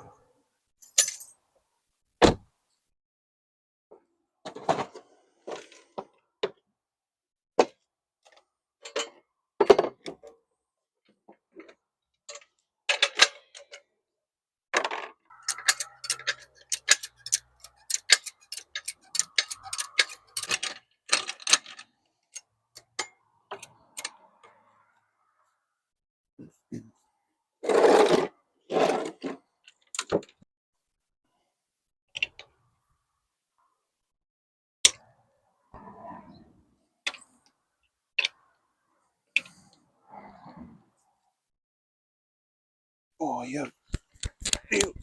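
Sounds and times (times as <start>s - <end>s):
hand tools clicking and knocking: 14.8s - 24.2s
fast ticking clicks: 15.5s - 20.6s.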